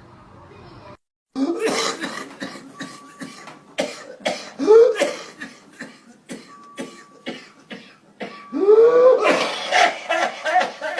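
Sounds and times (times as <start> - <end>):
person coughing: 1.4 - 8.4, 9.2 - 10.9.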